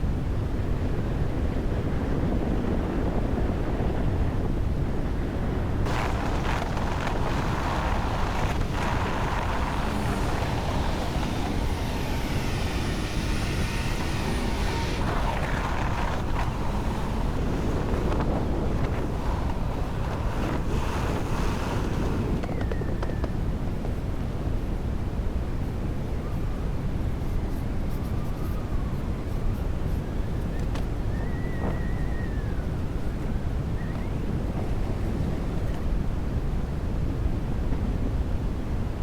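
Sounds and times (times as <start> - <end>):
wind buffeting microphone: 1.6 - 24.8
faint steady whine: 5.8 - 37.0.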